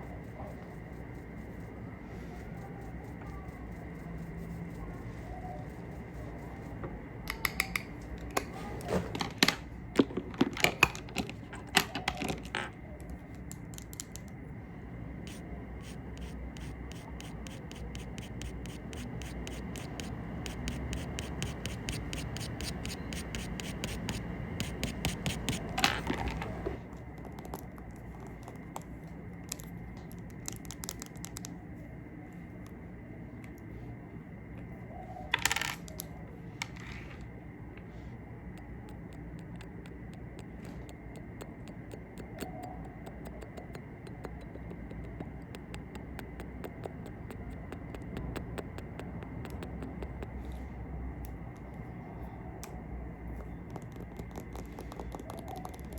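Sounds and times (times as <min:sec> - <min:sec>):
makeup tools scratching and rubbing: 0:15.3 - 0:26.7
quick even taps: 0:38.6 - 0:50.4
sharp taps: 0:38.6 - 0:50.4.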